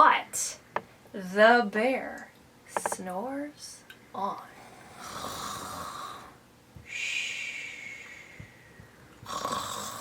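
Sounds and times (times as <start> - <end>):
woman imitating bear snoring: 4.8 - 6.4, 9.2 - 10.0.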